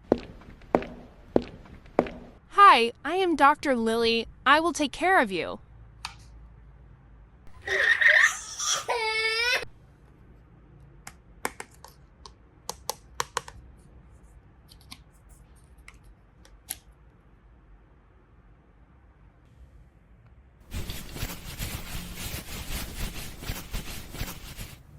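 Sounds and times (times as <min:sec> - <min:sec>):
high-pitched crying: 0:07.5 - 0:09.7.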